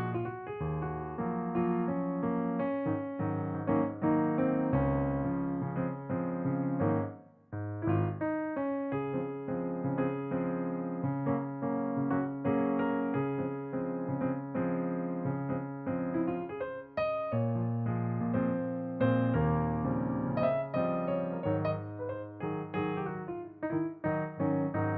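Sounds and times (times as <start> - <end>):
gentle piano music: 0.0 - 24.9.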